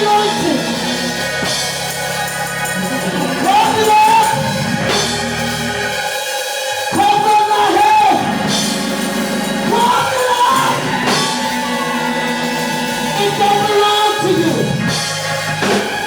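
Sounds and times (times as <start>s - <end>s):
person singing: 0.0s - 4.7s, 7.0s - 14.8s
church music held chords: 0.0s - 16.0s.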